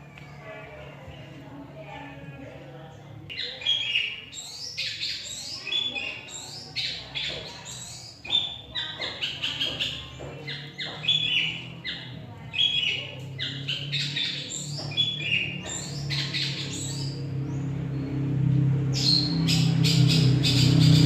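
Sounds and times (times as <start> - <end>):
shrike singing chirps and whistles: 3.3 - 17.2.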